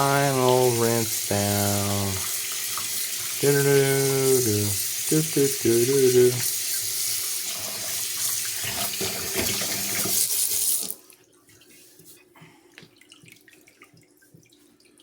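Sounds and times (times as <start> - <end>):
tap water running: 0.0 - 11.1
faint water drips: 10.9 - 15.0.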